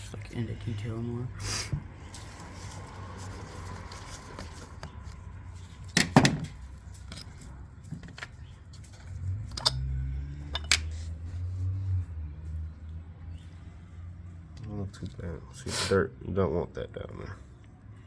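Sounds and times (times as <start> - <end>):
metal parts and tools clinking: 5.7 - 11.1.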